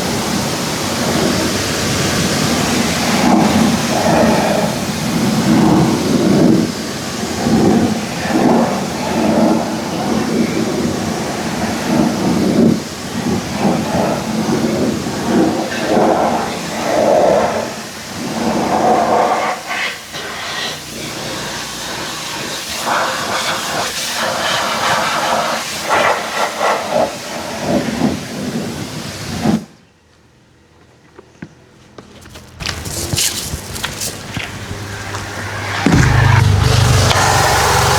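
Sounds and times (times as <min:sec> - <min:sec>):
pressure washer spray hissing: 0:19.4 - 0:27.3, 0:32.6 - 0:37.9.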